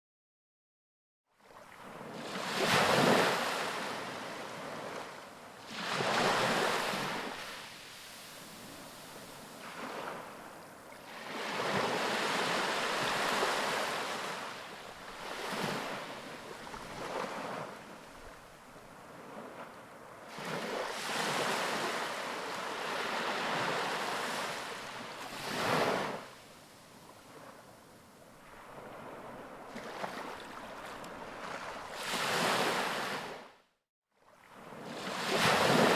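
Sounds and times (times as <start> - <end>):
ocean waves breaking on beach: 1.5 - 33.5, 34.2 - 35.9.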